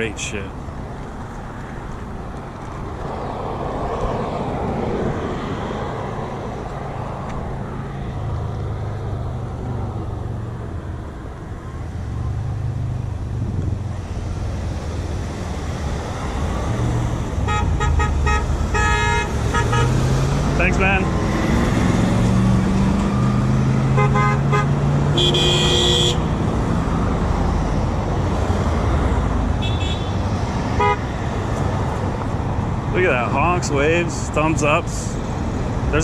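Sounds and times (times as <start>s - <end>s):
passing road traffic: 0.0s - 36.0s
car horn tooting: 17.4s - 20.0s, 23.9s - 26.3s, 29.6s - 30.2s, 30.8s - 31.0s.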